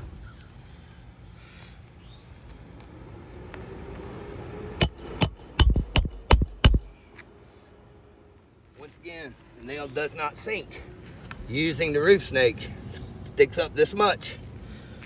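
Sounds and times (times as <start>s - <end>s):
hammer striking roofing nail: 4.8s - 6.9s.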